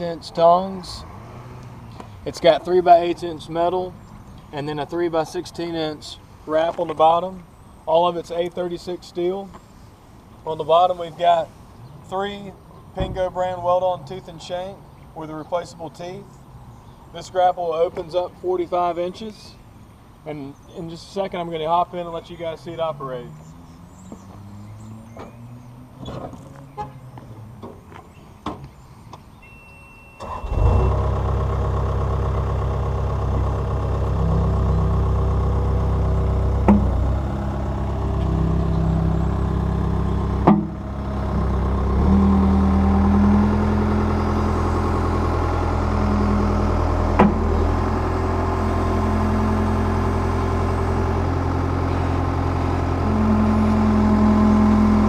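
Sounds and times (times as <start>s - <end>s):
short beep: 29.4s - 31.0s
skid steer loader engine: 29.4s - 55.0s
sharp metallic knocks: 36.6s - 37.0s, 40.4s - 40.9s, 47.2s - 47.6s.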